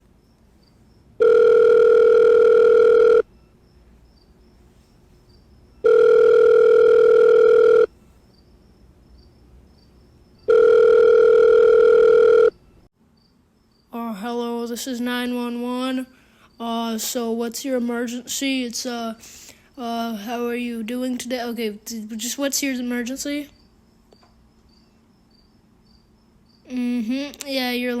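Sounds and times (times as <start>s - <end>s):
telephone ringback tone: 1.2s - 3.3s, 5.8s - 7.9s, 10.5s - 12.6s.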